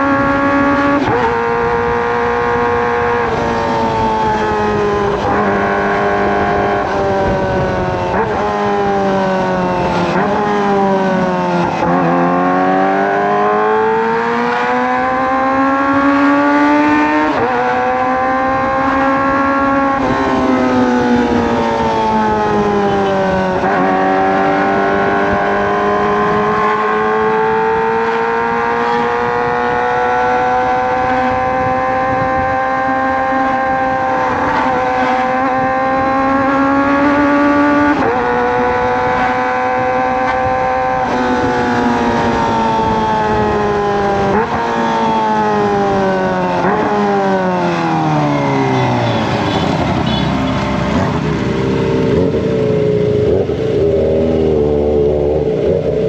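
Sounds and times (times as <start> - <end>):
motorcycle engine revving high: 0.0 - 56.0.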